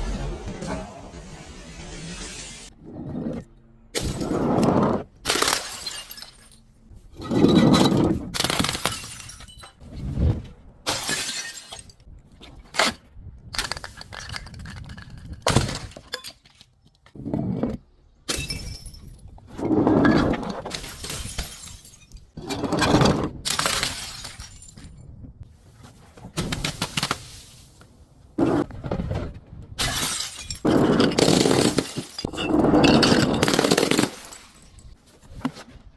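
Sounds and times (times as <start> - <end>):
glass bottles shattering: 5.3 - 6.7, 8.6 - 9.8, 10.9 - 11.9, 20.7 - 22.4, 23.5 - 25.0, 29.8 - 35.0.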